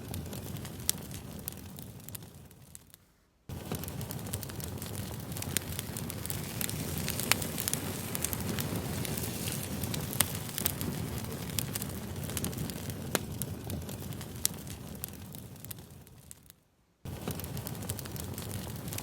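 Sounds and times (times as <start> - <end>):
campfire crackling and popping: 0.0 - 19.0.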